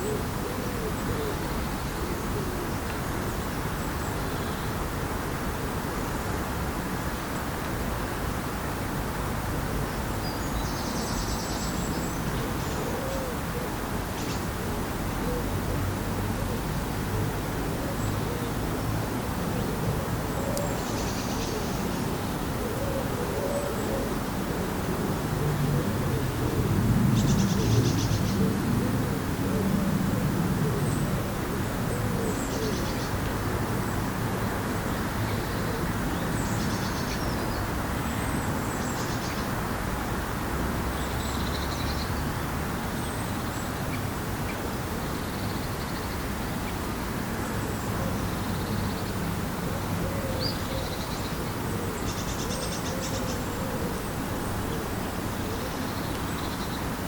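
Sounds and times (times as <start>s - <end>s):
low cooing calls: 0.0s - 3.4s, 11.8s - 34.0s, 47.6s - 57.0s
birds singing: 42.9s - 57.0s.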